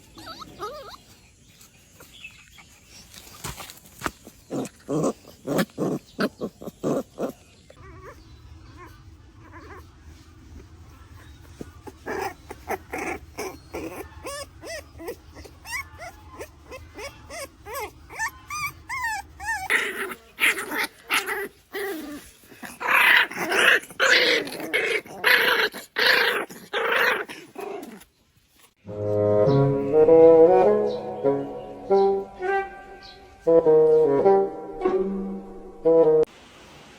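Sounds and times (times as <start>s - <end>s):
puppy growling and yipping: 0.0s - 1.2s, 4.4s - 28.1s.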